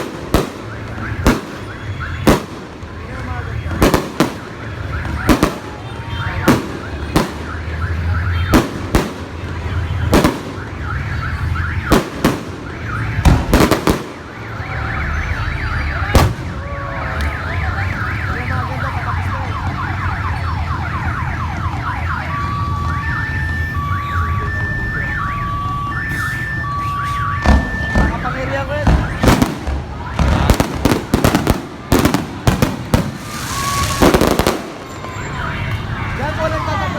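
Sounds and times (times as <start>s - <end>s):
fireworks exploding: 0.0s - 14.9s, 16.0s - 18.1s, 26.4s - 36.6s
two-tone alarm: 0.5s - 2.8s, 9.5s - 16.3s, 17.1s - 36.9s
whistling fireworks shells: 30.2s - 35.1s.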